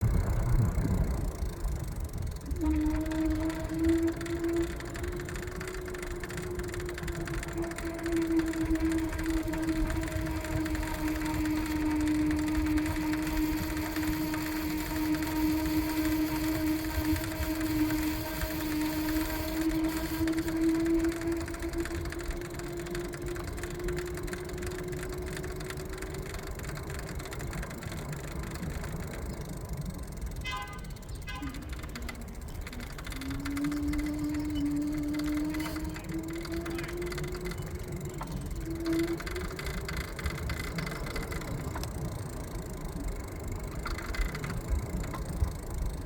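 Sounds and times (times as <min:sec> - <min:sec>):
fast rattle: 0:00.0 - 0:46.0
electric motor whine: 0:00.7 - 0:30.2, 0:30.9 - 0:46.0.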